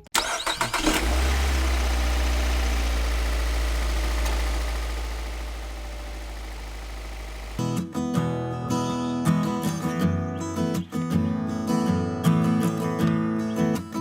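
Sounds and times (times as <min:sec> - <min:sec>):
small motor humming and rattling: 0:00.4 - 0:07.6.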